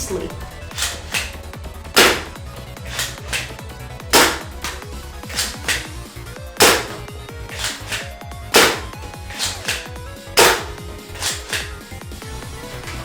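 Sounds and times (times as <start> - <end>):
background music: 0.0 - 13.0
toy blaster shots: 0.1 - 6.0, 6.6 - 11.8
blaster priming clicks: 0.6 - 11.9.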